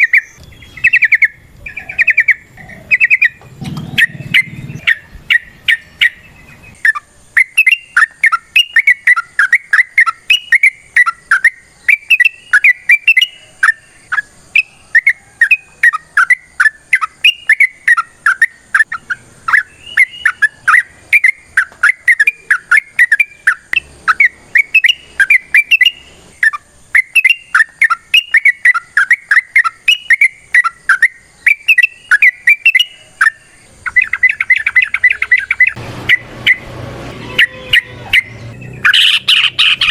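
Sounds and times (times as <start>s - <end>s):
bird singing bubbling whistles: 0.0s - 36.6s, 37.7s - 39.9s.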